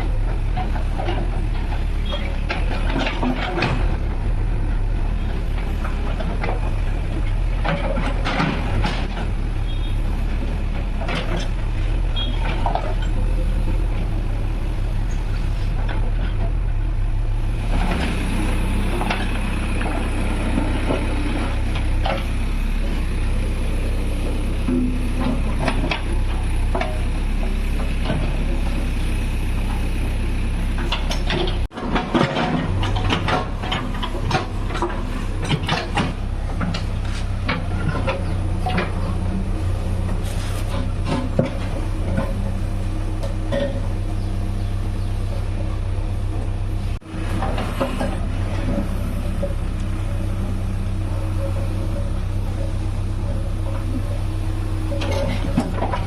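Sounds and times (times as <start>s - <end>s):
diesel engine running: 0.0s - 56.0s
metallic clanks and rattles: 0.3s - 4.0s, 30.7s - 39.4s, 54.8s - 56.0s.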